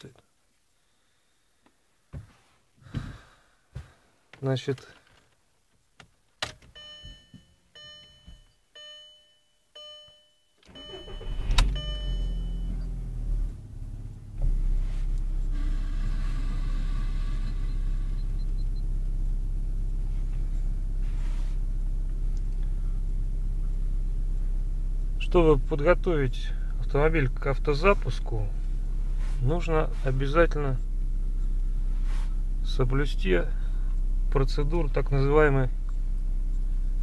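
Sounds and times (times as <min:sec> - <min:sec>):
car electronic chime beeping: 0:06.8 - 0:13.6
car engine starting and idling: 0:10.6 - 0:37.0.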